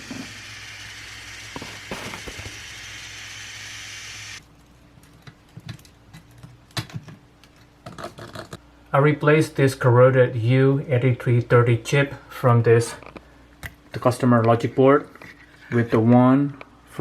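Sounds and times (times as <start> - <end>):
steady hiss: 0.0 - 4.4.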